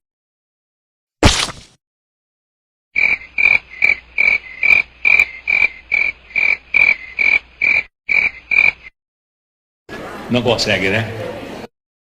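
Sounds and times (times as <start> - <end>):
rhythmic croaking calls: 3.0 - 9.0.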